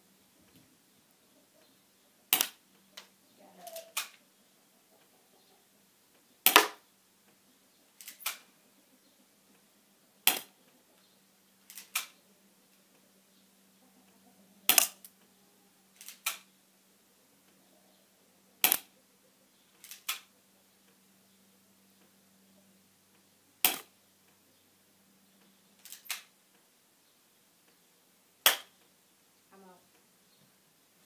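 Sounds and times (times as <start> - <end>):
airsoft gun firing snaps: 18.6 - 18.9.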